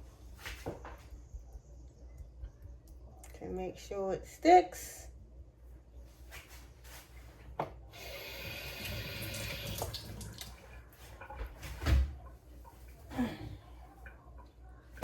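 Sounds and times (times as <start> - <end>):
kitchen tap running: 8.0 - 11.8.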